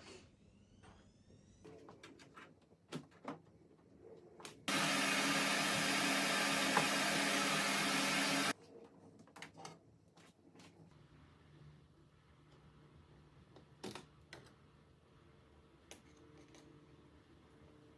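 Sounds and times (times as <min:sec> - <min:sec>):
electric motor blowing air: 0:04.7 - 0:08.5.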